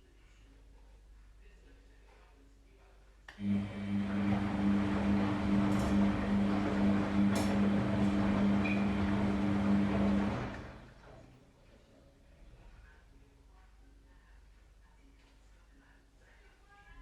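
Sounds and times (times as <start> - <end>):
washing machine running: 3.4 - 11.2.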